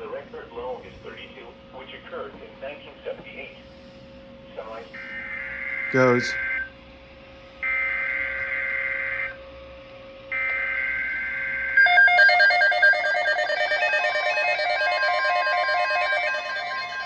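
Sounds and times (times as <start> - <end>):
rapid electronic stepping beeps: 11.8 - 17.0
buzzy screeching data bursts: 12.1 - 17.0.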